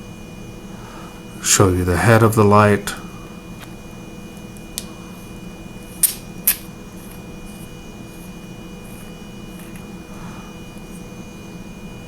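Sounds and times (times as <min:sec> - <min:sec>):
steady low hum: 0:00.0 - 0:12.0
metallic flashlight clicks: 0:06.0 - 0:06.6.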